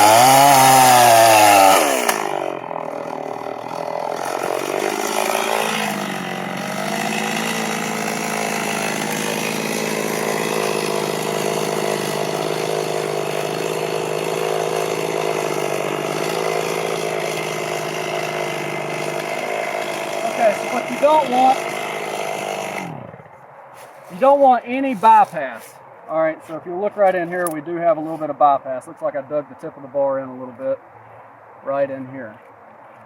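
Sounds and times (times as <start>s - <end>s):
chainsaw idling: 0.0s - 23.4s.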